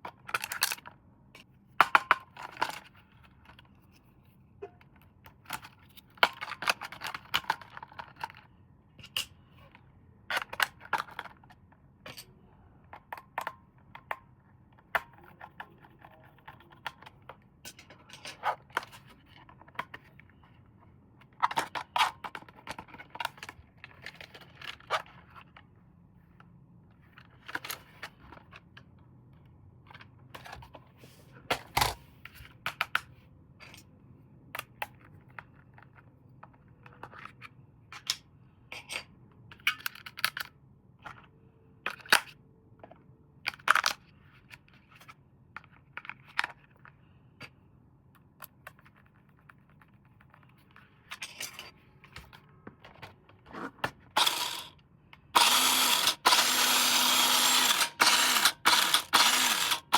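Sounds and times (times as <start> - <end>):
handling plastic toys and packaging: 0.0 - 12.3, 13.0 - 33.9, 39.4 - 59.9.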